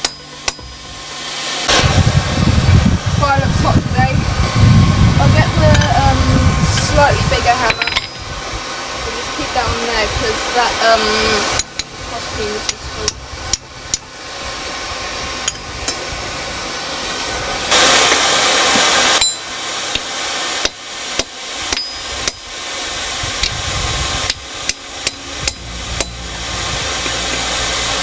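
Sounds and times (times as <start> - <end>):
hammer striking steel on anvil: 0.0 - 1.9, 7.6 - 8.2, 11.5 - 12.0, 12.6 - 14.1, 15.4 - 16.1, 17.7 - 22.6, 24.3 - 27.9
forge rushing: 0.0 - 28.0
loud rushing hiss: 0.0 - 28.0.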